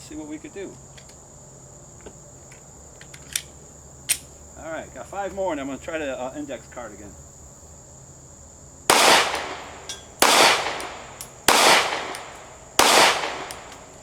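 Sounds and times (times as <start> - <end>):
pistol shots: 8.9 - 14.0.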